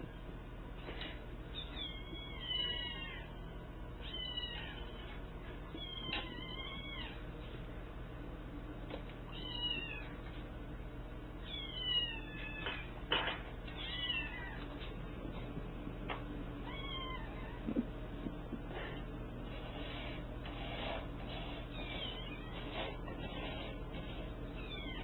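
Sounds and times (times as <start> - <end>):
cat meowing: 4.0 - 5.1, 13.8 - 14.7, 16.6 - 17.6.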